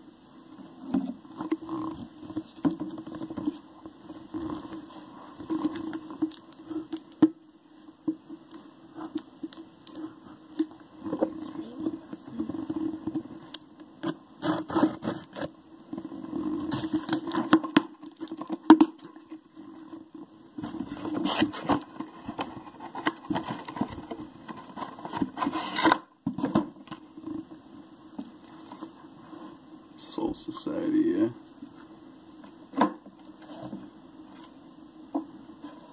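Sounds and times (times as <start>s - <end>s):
packaging scraping and rustling: 12.8s - 26.1s.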